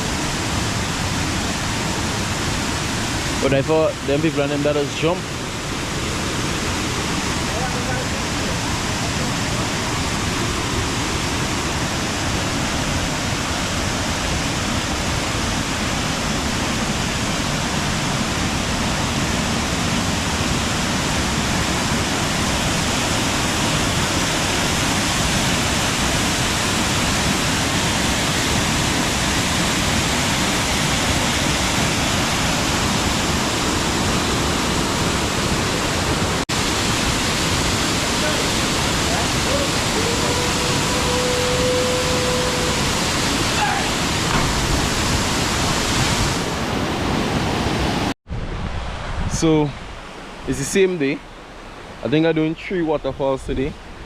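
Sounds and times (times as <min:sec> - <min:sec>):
waterfall rushing: 0:00.0 - 0:48.2.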